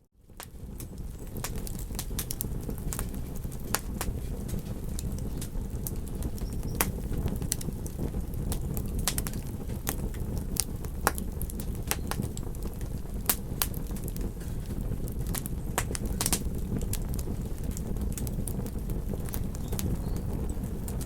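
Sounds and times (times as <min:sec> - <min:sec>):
campfire crackling: 0:00.2 - 0:21.0
steady low rumble: 0:00.3 - 0:21.0.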